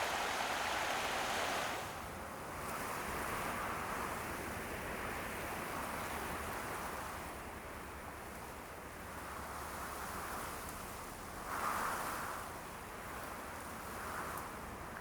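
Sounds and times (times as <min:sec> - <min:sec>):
water rushing: 0:00.0 - 0:02.1.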